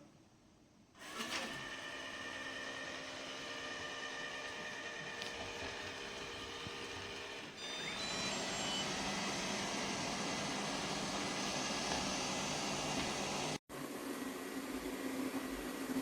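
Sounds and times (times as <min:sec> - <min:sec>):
robot vacuum cleaner whirring: 0:01.0 - 0:13.6.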